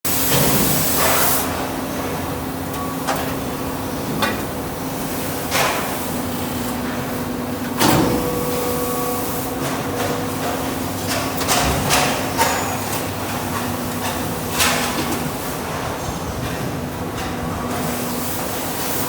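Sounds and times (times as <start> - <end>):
machine hiss: 0.1 - 1.7
machine humming: 1.5 - 18.8.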